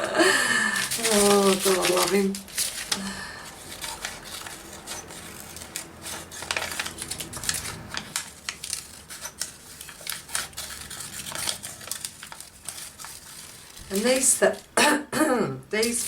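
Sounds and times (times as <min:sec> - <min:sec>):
scissors cutting paper: 0:00.8 - 0:14.6.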